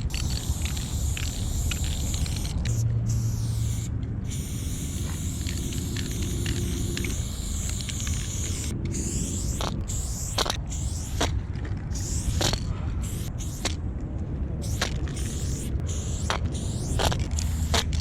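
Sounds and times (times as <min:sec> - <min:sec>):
spray paint can hissing: 0:00.0 - 0:13.8, 0:14.6 - 0:18.0
steady low rumble: 0:00.0 - 0:18.0.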